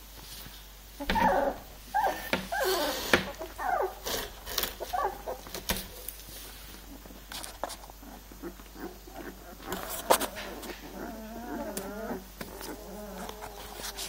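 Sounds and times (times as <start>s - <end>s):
puppies whimpering and squealing: 1.0s - 5.6s, 7.9s - 14.0s.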